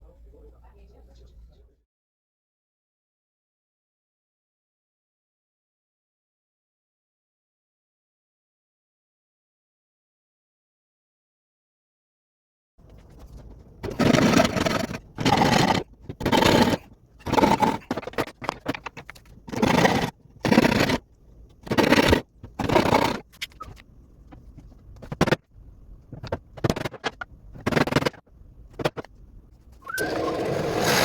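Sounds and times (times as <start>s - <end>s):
hand tool scraping wood: 13.0s - 21.0s, 21.6s - 23.8s, 29.8s - 31.0s.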